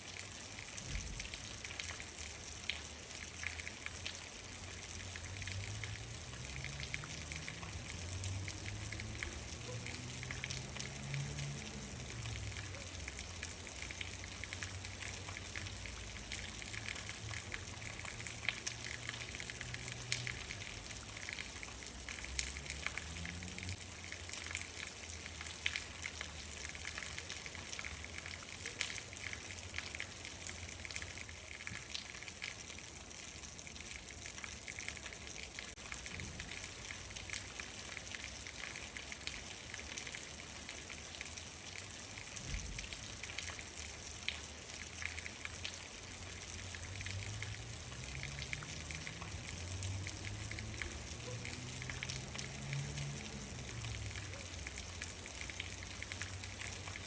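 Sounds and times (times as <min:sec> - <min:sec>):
rain drops ticking: 0:00.0 - 0:57.0.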